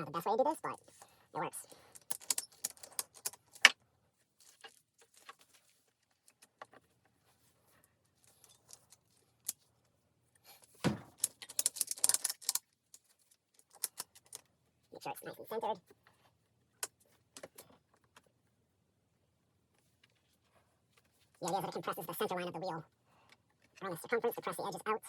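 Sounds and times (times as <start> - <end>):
ratchet strap clicking and rattling: 1.8 - 3.7, 11.1 - 12.6.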